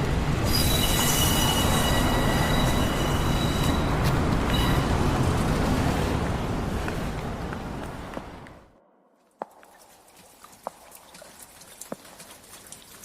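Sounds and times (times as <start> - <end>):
train rumbling: 0.0 - 8.4
metallic wheel squeal: 0.4 - 5.0.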